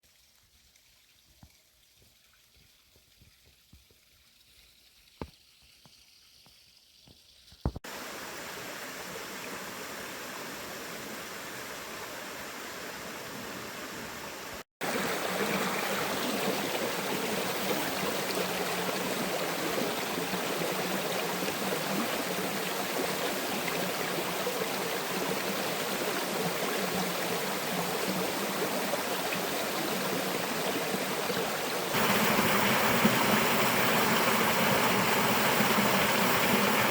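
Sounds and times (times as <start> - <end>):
waterfall rushing: 31.9 - 36.9.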